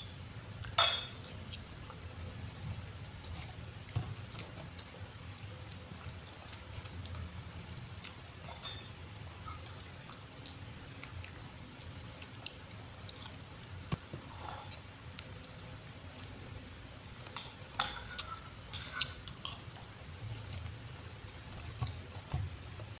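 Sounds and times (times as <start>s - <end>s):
cutlery clicking on a plate: 0.6s - 1.3s, 8.5s - 9.7s, 17.3s - 19.6s
person chewing: 2.8s - 23.0s.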